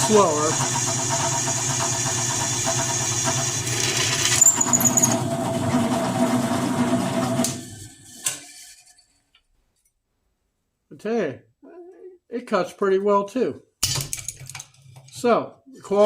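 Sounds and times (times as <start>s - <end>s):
motor spinning down: 0.0s - 7.6s
drill press running: 0.0s - 8.4s
drill bit squealing in steel: 4.3s - 5.2s.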